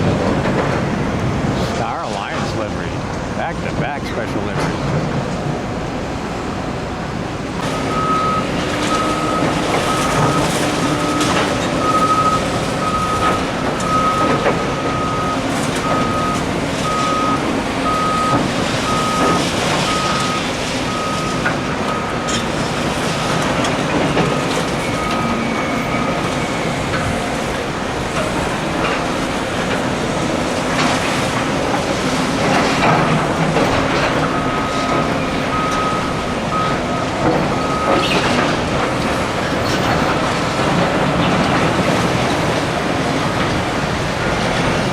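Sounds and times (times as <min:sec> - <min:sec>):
machine engine noise: 0:00.0 - 0:44.9
reversing alarm beeping: 0:07.3 - 0:40.6.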